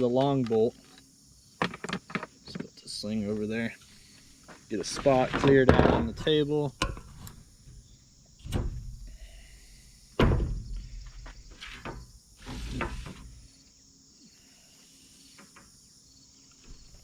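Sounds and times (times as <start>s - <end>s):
shuffling and clattering: 4.4s - 9.0s.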